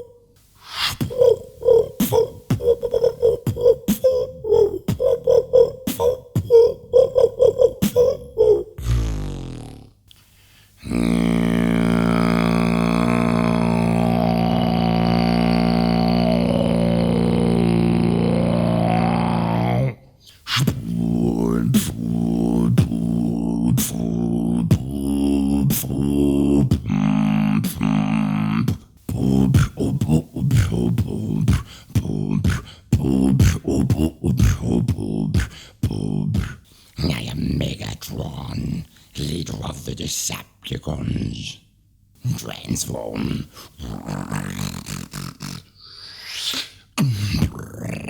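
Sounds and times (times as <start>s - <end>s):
droning vocal tone: 0.0s - 10.0s, 10.8s - 40.0s, 42.2s - 48.0s
beatboxing pattern: 0.0s - 10.1s, 20.3s - 36.7s, 42.3s - 48.0s.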